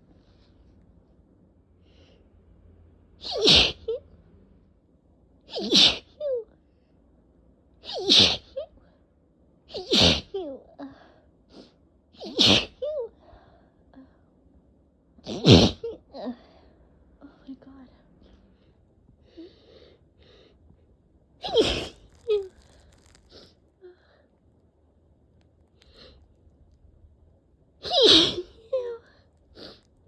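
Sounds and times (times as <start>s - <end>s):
person sneezing: 3.2s - 3.9s, 5.5s - 6.2s, 7.9s - 8.6s, 9.7s - 10.3s, 12.2s - 12.8s, 15.3s - 15.8s, 21.4s - 22.1s, 27.8s - 28.6s.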